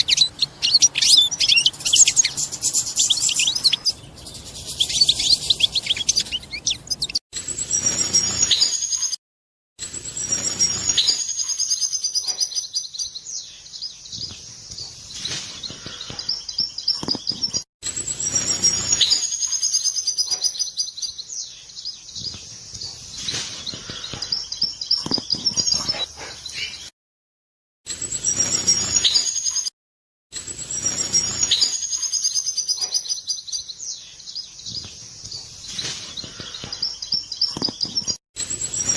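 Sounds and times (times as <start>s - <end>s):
finch twittering: 0.0s - 7.2s.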